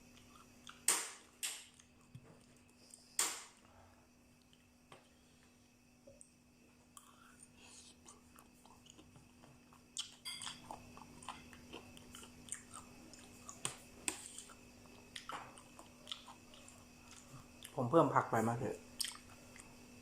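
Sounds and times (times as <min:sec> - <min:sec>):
person chewing food: 0:00.0 - 0:00.9, 0:01.6 - 0:03.2, 0:06.9 - 0:17.8, 0:18.8 - 0:19.9.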